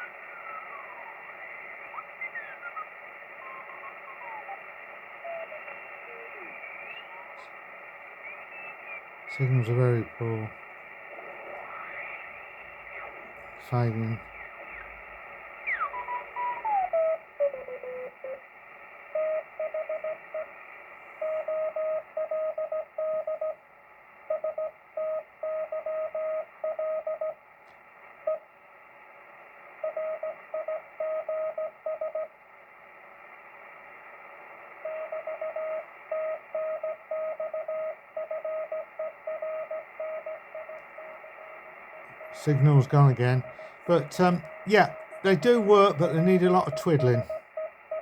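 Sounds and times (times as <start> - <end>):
radio band hiss: 0.0 - 22.9, 27.8 - 31.0, 32.3 - 48.0
morse code beat tone: 42.2 - 48.0.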